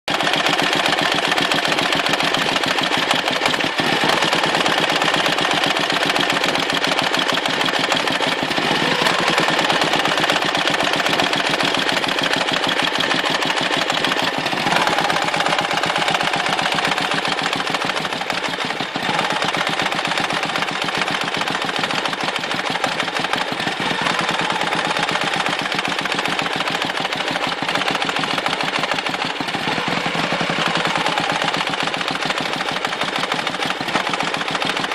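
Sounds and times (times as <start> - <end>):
motorcycle engine knocking: 0.1 - 34.9.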